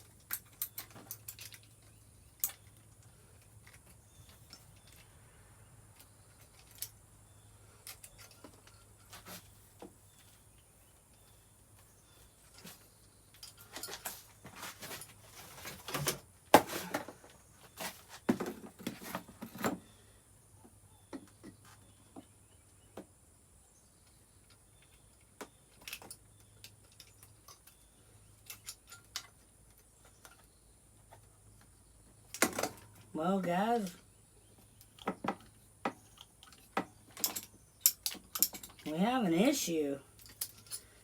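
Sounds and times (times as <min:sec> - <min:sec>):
clicks and rattles of tools: 0:00.0 - 0:05.1, 0:05.9 - 0:07.0, 0:07.8 - 0:09.9, 0:12.4 - 0:17.2, 0:24.4 - 0:30.5, 0:32.3 - 0:33.1, 0:34.6 - 0:39.0, 0:40.1 - 0:41.0.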